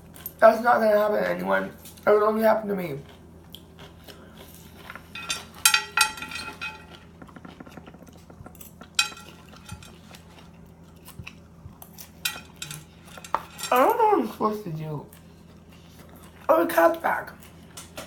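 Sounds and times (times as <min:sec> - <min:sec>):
utensil clinking against dish: 0:04.9 - 0:10.2, 0:12.2 - 0:14.0.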